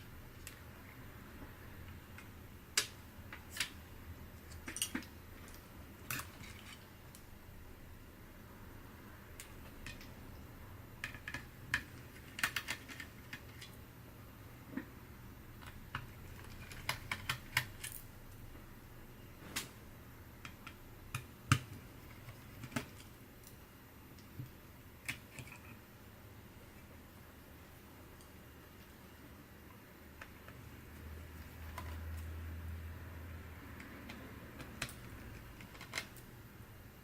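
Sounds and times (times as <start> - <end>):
laptop parts clicking: 1.9 - 3.8, 11.0 - 13.8, 15.6 - 18.0, 20.4 - 23.6, 24.2 - 25.8, 33.8 - 36.3.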